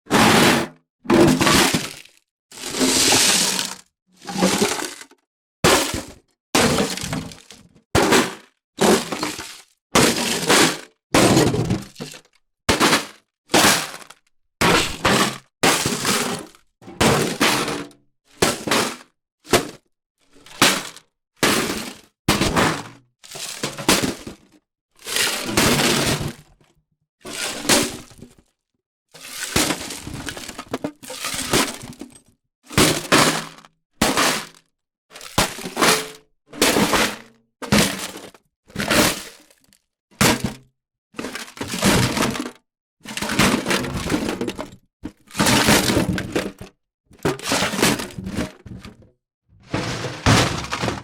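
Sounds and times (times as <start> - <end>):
ice cubes clinking in bucket: 1.5 - 2.1, 2.7 - 5.1, 5.7 - 7.6, 13.7 - 16.6, 29.2 - 32.2, 45.4 - 49.0, 49.6 - 51.0.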